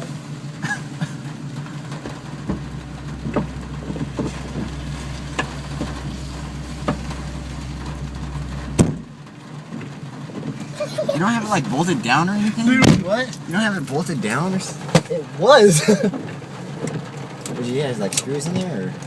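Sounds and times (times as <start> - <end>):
car engine idling: 0.0 - 19.0
sharp bang: 2.0 - 10.6.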